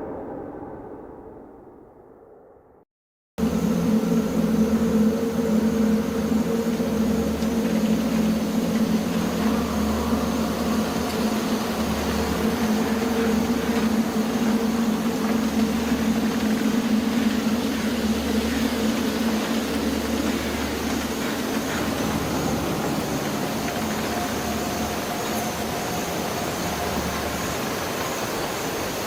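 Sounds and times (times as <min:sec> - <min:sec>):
deep rumble: 0:00.0 - 0:02.9
low hum: 0:00.0 - 0:27.8.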